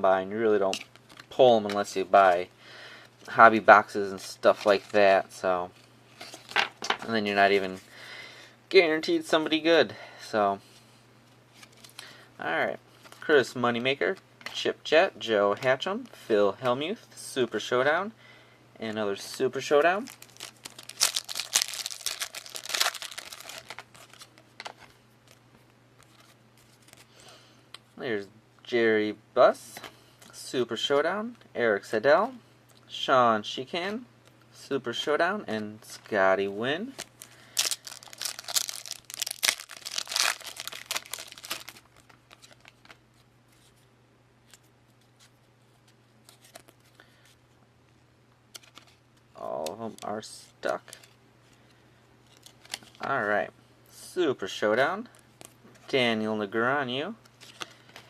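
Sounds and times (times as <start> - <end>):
plastic wrapper crinkling: 19.3 - 25.4, 36.8 - 43.8.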